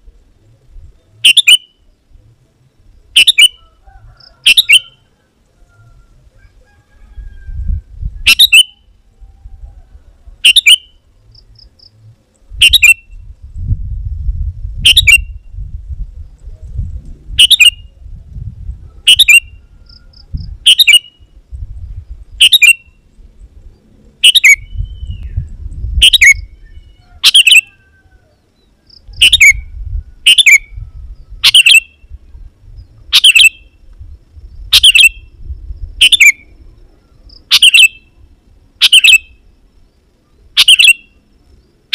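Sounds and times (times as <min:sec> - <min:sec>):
bulbul calling: 0:01.2 - 0:01.9, 0:03.1 - 0:05.1, 0:08.2 - 0:08.9, 0:10.4 - 0:13.2, 0:14.8 - 0:15.4, 0:17.4 - 0:17.9, 0:19.0 - 0:21.3, 0:22.3 - 0:23.0, 0:24.2 - 0:28.0, 0:28.6 - 0:32.2, 0:32.8 - 0:33.8, 0:34.6 - 0:35.4, 0:36.0 - 0:38.2, 0:38.8 - 0:39.5, 0:40.3 - 0:41.3
low rumble: 0:11.1 - 0:19.0, 0:21.3 - 0:27.0.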